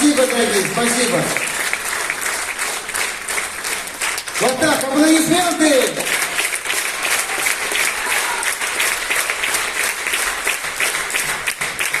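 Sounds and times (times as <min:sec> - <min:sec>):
audience applauding: 0:00.0 - 0:12.0.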